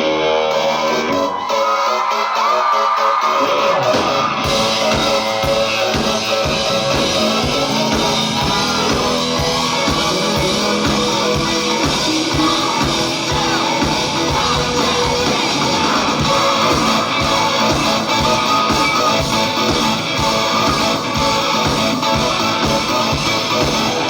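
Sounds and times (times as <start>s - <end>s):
electric guitar: 0.0s - 24.0s
rock band playing live: 0.0s - 24.0s
drum kit steady beat: 3.8s - 24.0s.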